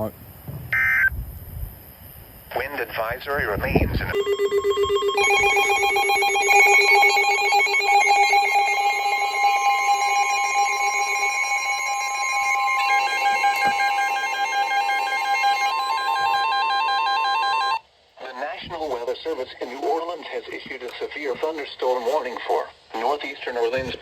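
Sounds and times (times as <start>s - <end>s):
lower alert tone: 4.1s - 17.8s
steady high alert tone: 4.1s - 17.8s
warbling ringing alarm: 4.1s - 17.8s.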